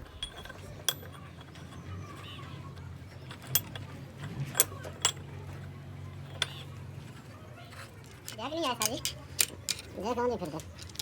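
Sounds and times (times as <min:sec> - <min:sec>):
steady low hum: 0:00.0 - 0:01.2
metal tools clinking: 0:00.0 - 0:01.8, 0:03.2 - 0:05.2.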